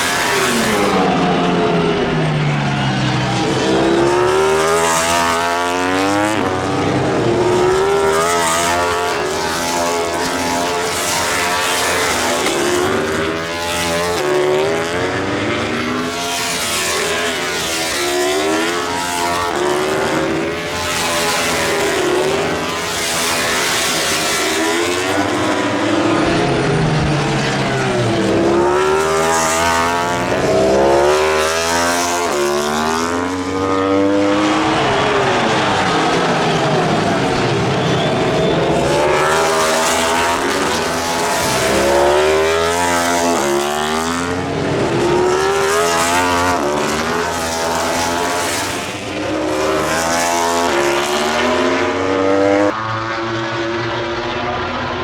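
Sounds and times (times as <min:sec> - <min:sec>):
racing motorcycles passing: 0:00.0 - 0:55.0.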